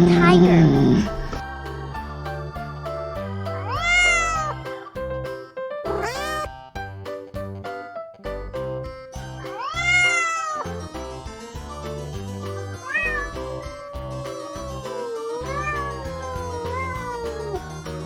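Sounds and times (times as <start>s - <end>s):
background music with steady beat: 0.0s - 18.0s
cat meowing: 3.7s - 4.6s, 5.9s - 6.5s, 9.5s - 10.7s, 12.8s - 17.6s.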